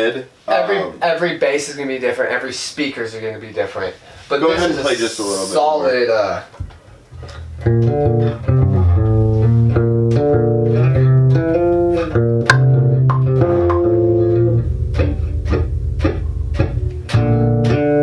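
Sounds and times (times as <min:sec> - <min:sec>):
electric bass guitar notes: 0:07.1 - 0:18.0.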